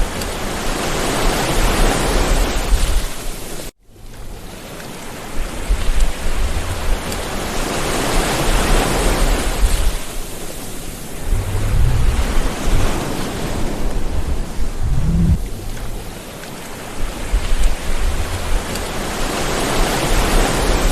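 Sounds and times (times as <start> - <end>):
sea waves breaking on shore: 0.0 - 20.9
low rumbles: 11.0 - 19.3.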